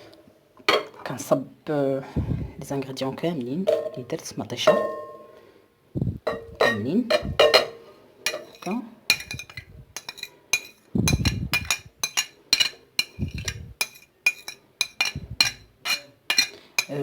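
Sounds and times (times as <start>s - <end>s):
dull heavy thumps: 2.2s - 2.6s
spoon clinking against bowl: 6.3s - 17.0s
ingredients scraped into bowl: 8.3s - 17.0s.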